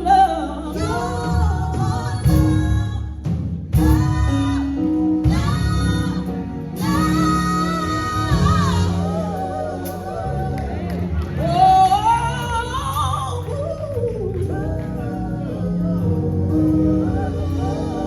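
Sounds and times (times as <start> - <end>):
woman singing wordless line: 0.0 - 3.2, 3.8 - 10.5
band playing gospel music: 0.0 - 18.0.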